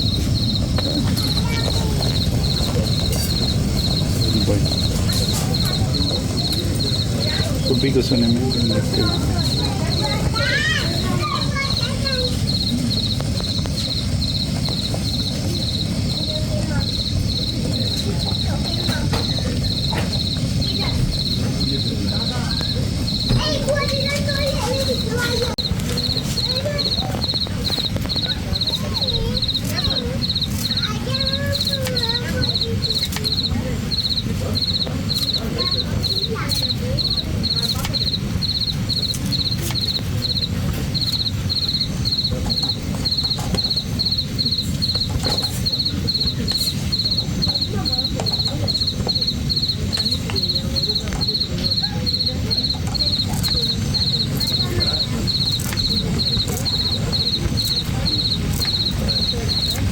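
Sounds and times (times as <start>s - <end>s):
insect chirping: 0.0s - 59.9s.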